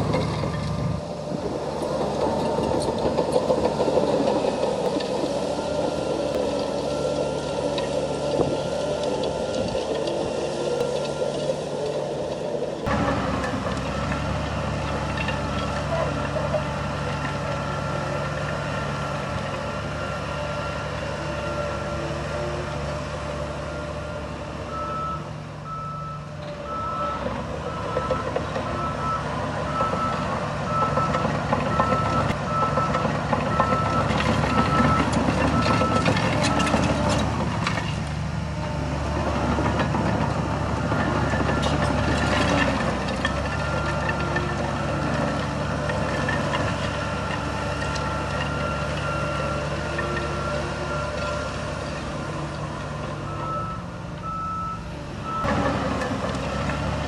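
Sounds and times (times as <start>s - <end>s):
heavy machine diesel engines: 0.0s - 57.0s
reversing alarm beeping: 23.7s - 36.8s, 47.6s - 51.4s, 53.2s - 55.5s.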